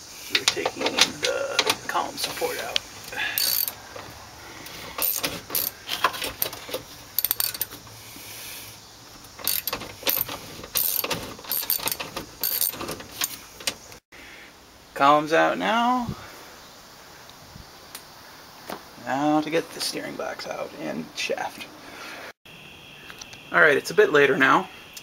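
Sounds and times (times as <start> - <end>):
tools and bolts clanking on metal: 0.3 - 8.0, 9.1 - 14.0.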